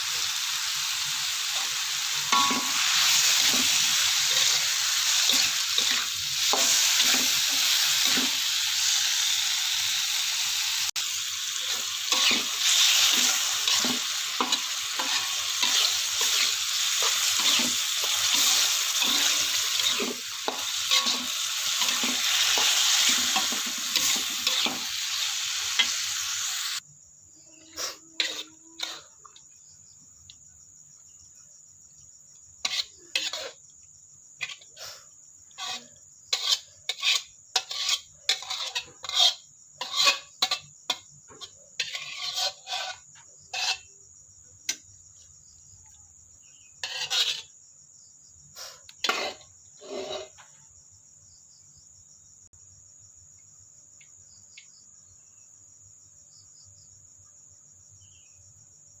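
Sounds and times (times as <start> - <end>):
crickets chirring: 0.0 - 59.0
utensil clinking on cookware: 2.3 - 2.8.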